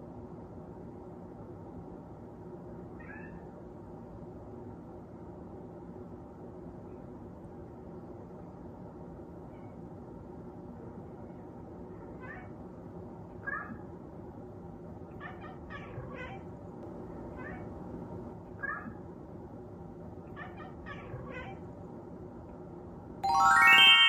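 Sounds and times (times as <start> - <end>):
cat meowing: 3.0 - 3.4.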